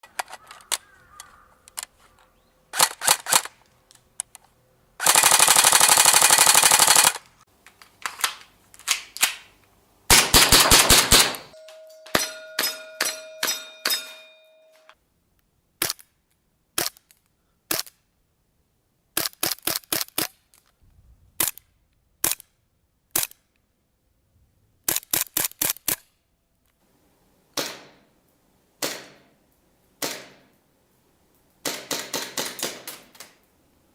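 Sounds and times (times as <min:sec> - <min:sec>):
airsoft guns firing: 0:05.0 - 0:07.2, 0:10.1 - 0:11.5, 0:31.6 - 0:33.1
ringing tone: 0:11.5 - 0:15.0.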